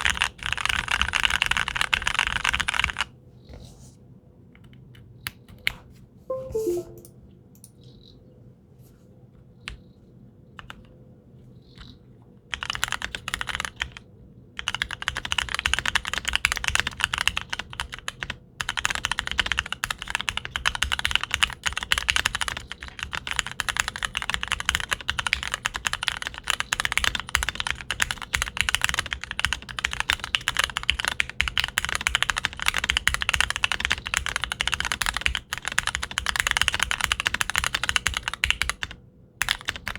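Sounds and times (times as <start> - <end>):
typing on mechanical keyboard: 0.0 - 3.1, 10.6 - 10.9, 11.8 - 39.9.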